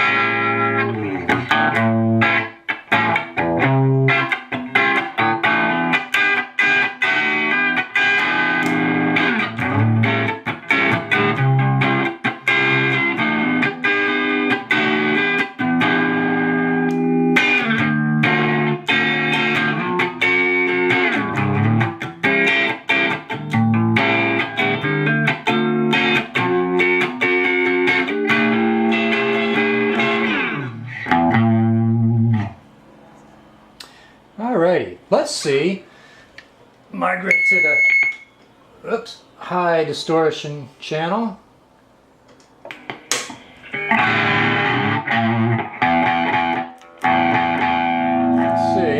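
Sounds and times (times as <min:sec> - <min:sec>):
overdriven electric guitar: 0:00.0 - 0:32.8, 0:42.7 - 0:48.9.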